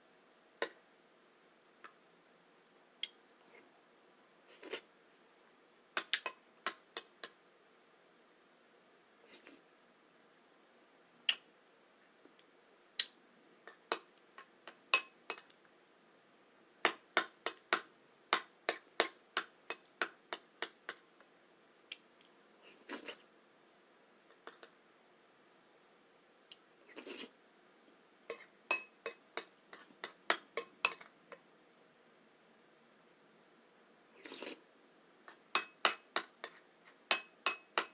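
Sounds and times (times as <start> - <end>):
spoon clinking against bowl: 14.9 - 15.6, 28.3 - 31.4, 35.6 - 37.9.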